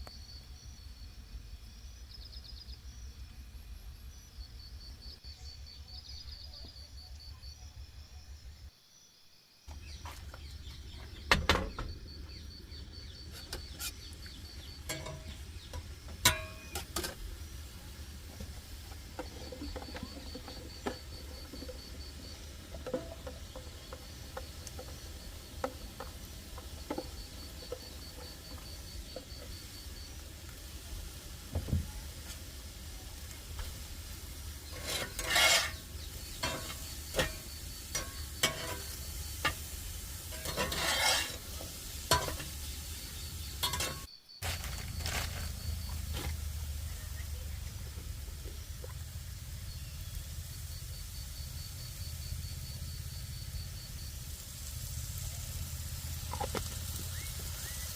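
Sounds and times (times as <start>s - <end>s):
utensils and cookware clinking: 13.2s - 29.8s, 34.4s - 42.7s, 43.5s - 45.4s.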